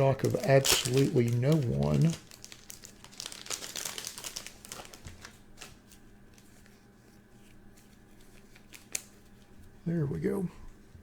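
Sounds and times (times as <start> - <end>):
plastic card sleeves crinkling: 0.0 - 6.8.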